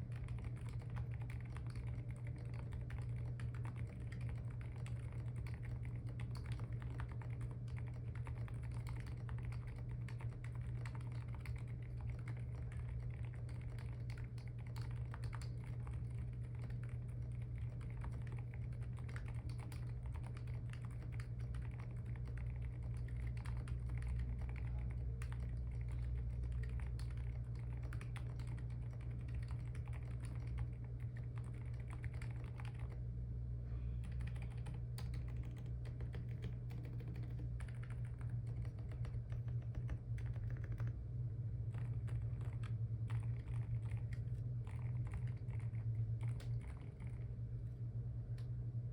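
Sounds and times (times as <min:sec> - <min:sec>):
keyboard typing: 0:00.0 - 0:33.0, 0:34.0 - 0:41.0, 0:41.7 - 0:47.3
steady low hum: 0:00.0 - 0:48.9
large keyboard keys pressed: 0:34.1 - 0:40.9.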